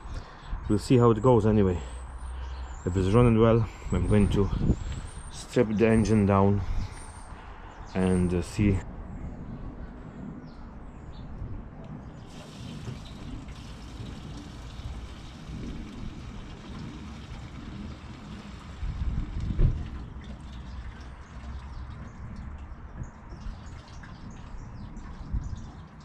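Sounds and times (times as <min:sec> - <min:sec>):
fuel pouring trickle: 0:12.2 - 0:26.0.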